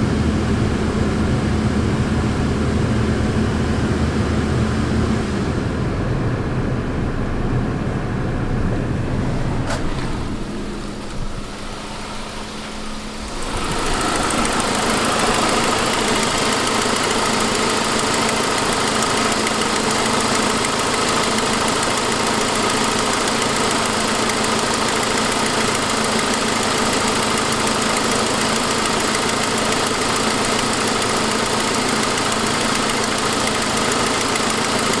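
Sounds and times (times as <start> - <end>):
car engine idling: 5.8 - 35.0
exhaust leak noise: 10.4 - 35.0.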